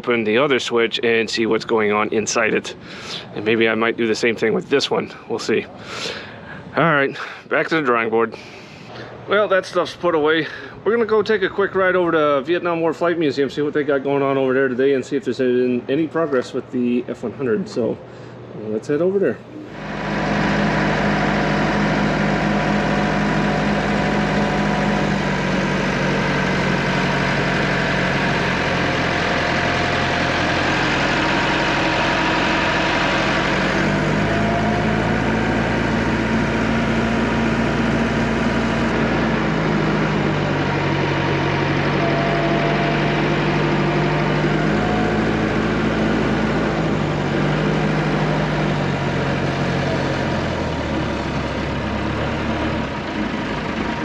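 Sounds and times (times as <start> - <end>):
vehicle engine running: 19.6 - 54.0.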